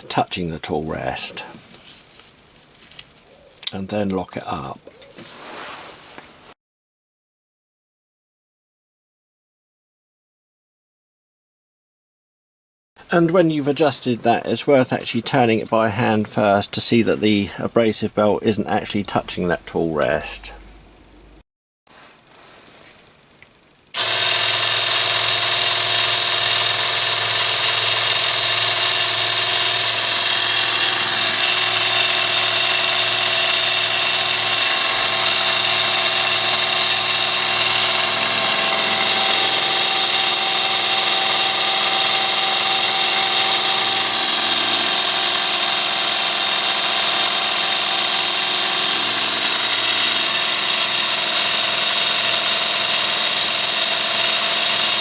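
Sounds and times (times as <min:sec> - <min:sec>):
belt sander running: 0:13.8 - 0:21.4, 0:24.0 - 0:55.0
loud high-pitched hiss: 0:24.0 - 0:55.0.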